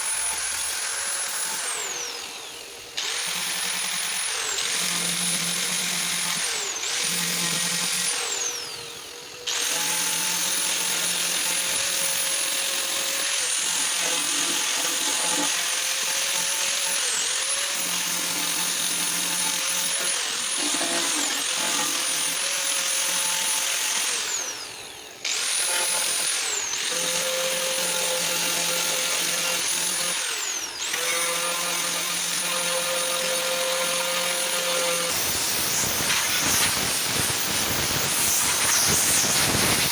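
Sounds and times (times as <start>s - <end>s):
grinder whining on car panel: 0.0s - 39.9s.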